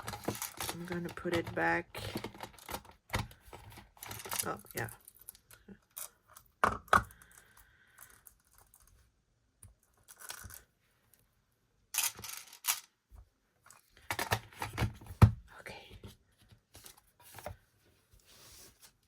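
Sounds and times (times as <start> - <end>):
plastic and card rustling: 0.0 - 6.2.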